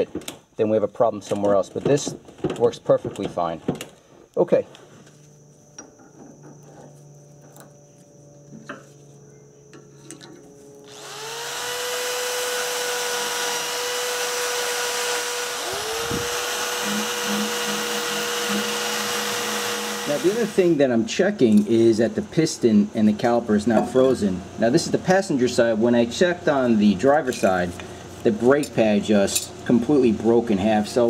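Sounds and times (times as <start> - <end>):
power tool whining: 10.4 - 20.8.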